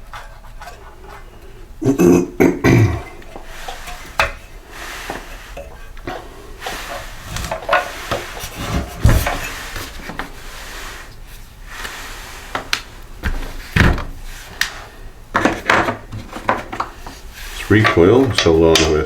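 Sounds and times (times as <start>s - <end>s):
hand tools and engine parts clinking: 14.5s - 19.0s.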